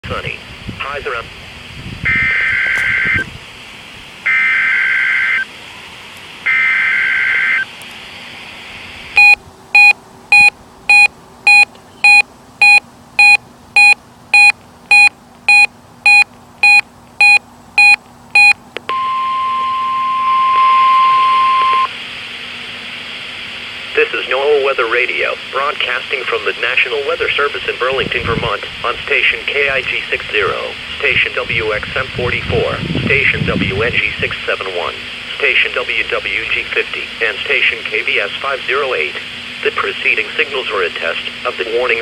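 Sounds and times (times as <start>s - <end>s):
steady warning alarm tone: 2.0s - 3.3s, 4.2s - 5.5s, 6.4s - 7.7s, 9.2s - 21.9s
short electronic beeps: 9.2s - 21.9s.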